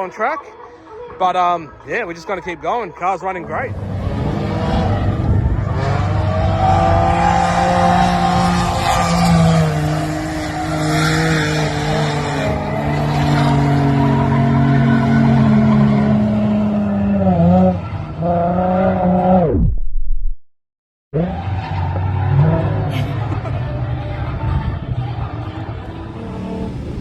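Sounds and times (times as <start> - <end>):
car engine running hard: 3.4 - 19.2, 21.2 - 27.0.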